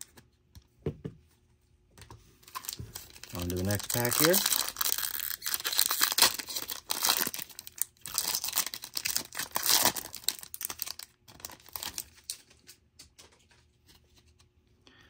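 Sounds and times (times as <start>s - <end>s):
wrapper tearing and crinkling: 2.5s - 12.6s.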